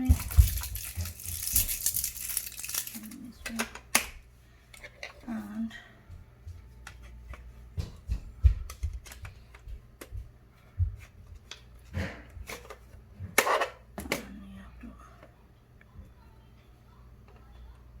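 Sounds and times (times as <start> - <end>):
plastic clicks and knocks: 7.8 - 10.2.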